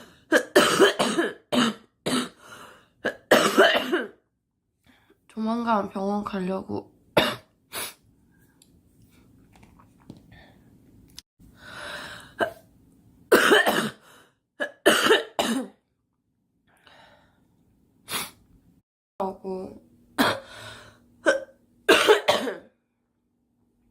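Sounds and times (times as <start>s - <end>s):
girl coughing: 0.3s - 2.4s, 3.1s - 4.2s, 7.2s - 7.5s, 13.3s - 14.0s, 14.6s - 15.8s, 20.2s - 20.5s, 21.2s - 22.7s.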